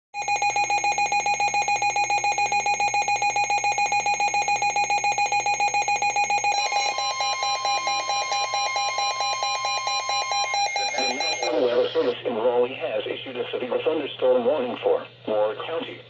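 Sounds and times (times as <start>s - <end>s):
rapid high alarm beeps: 0.2s - 12.1s
steady warning alarm tone: 0.2s - 12.1s.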